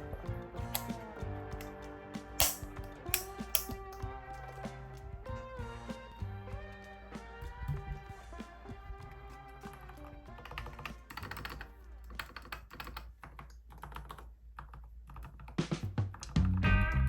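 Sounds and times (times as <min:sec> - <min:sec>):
background music: 0:00.0 - 0:13.0, 0:16.3 - 0:17.0
mechanical keyboard clicking: 0:09.7 - 0:16.4.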